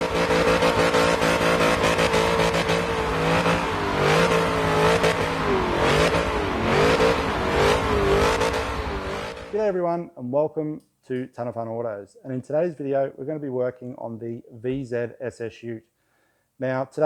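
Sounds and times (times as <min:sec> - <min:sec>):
car engine revving: 0:00.0 - 0:09.6.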